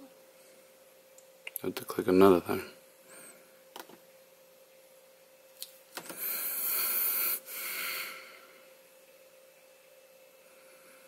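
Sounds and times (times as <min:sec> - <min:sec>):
person breathing close to microphone: 0:06.0 - 0:08.7.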